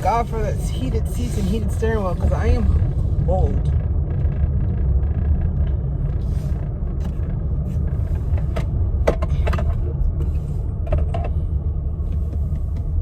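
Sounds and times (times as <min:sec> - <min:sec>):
car cabin road and engine rumble: 0:00.0 - 0:13.0.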